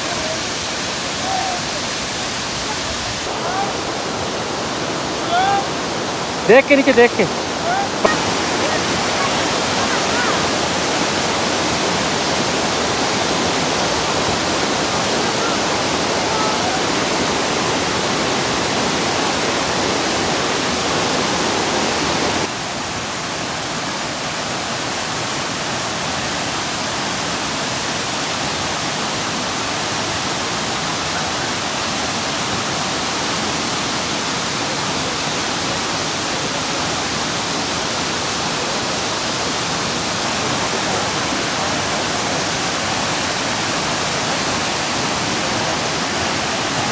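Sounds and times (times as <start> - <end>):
waterfall crashing: 0.0 - 46.9.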